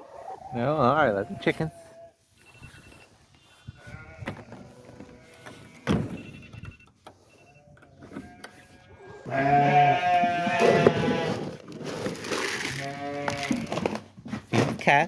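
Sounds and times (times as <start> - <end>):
sheep bleating: 3.6 - 5.8, 7.6 - 11.5, 12.7 - 13.7.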